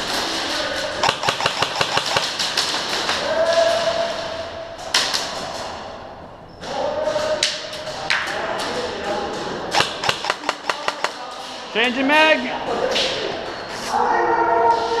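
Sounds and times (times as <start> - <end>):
airsoft gun automatic fire: 1.0 - 3.2, 9.7 - 11.2
sharp crack: 1.0 - 4.2, 9.7 - 11.6.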